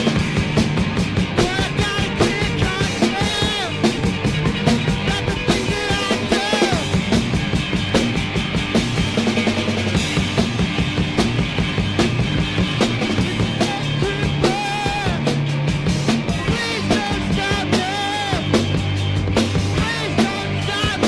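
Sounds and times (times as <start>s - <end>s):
drum kit steady beat: 0.0s - 21.0s
rock band playing: 0.0s - 21.0s
person singing: 1.4s - 3.8s, 5.0s - 7.0s, 13.2s - 15.3s, 16.4s - 18.6s, 19.8s - 21.0s.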